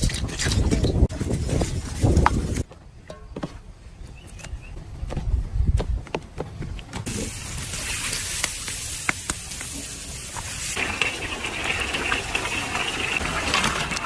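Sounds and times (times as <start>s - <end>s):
food sizzling in hot oil: 7.1s - 14.0s.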